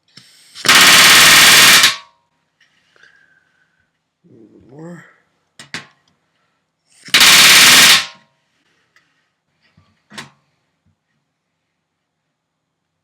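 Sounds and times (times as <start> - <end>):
pneumatic rivet gun hammering: 0.6 - 2.0, 7.1 - 8.2.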